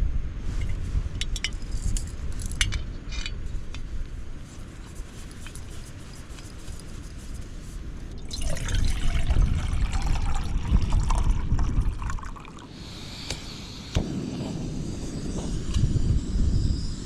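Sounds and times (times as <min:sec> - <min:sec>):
water pouring and trickling: 0:08.1 - 0:12.8
wind buffeting microphone: 0:08.1 - 0:17.0.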